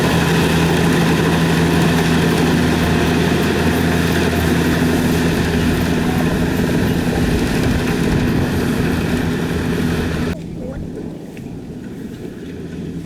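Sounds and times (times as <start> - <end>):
combine harvester engine running: 0.0 - 10.4.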